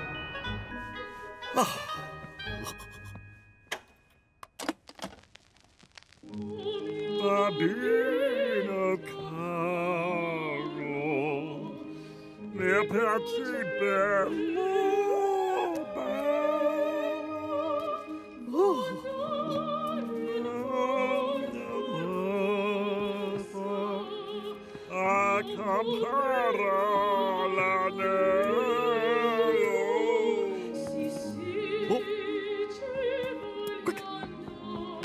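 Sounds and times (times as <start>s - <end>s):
operatic singing: 6.2s - 35.0s.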